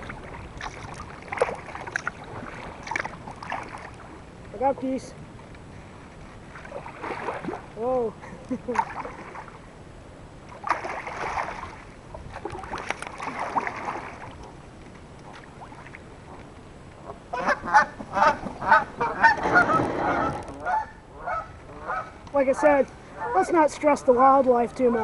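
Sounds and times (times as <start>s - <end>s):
kayak paddle swishing in water: 0.0s - 9.7s, 10.4s - 25.0s
geese honking: 17.0s - 22.2s.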